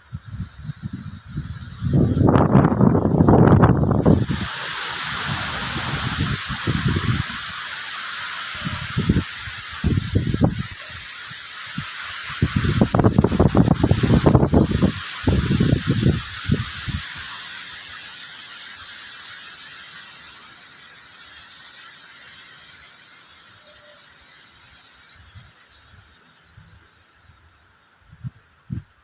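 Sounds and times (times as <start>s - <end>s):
wind buffeting microphone: 0.0s - 7.6s, 8.6s - 10.8s, 11.8s - 17.2s
rain pouring: 0.0s - 26.9s.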